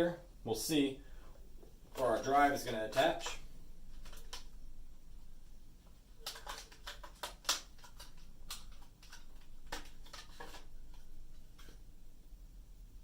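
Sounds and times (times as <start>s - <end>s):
faint hum: 0.0s - 6.8s
clicks and taps of handling: 6.2s - 11.8s.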